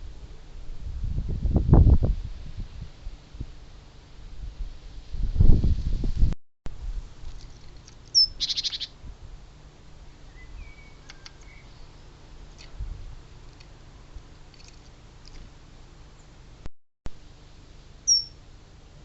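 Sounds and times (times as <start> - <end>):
small birds chipping: 7.3 - 9.0, 10.1 - 16.4, 18.0 - 18.4
bird trill: 8.1 - 9.0, 10.3 - 12.2, 18.0 - 18.4.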